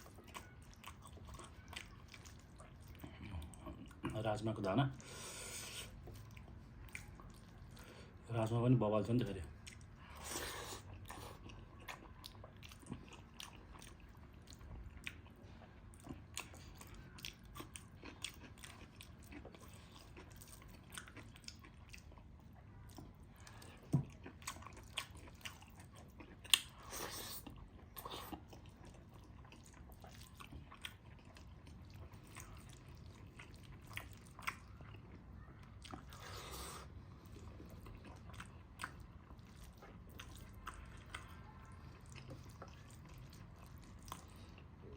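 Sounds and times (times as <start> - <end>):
person chewing food: 0.0 - 4.3, 4.9 - 8.2, 9.5 - 44.9
food crunching: 9.5 - 44.9.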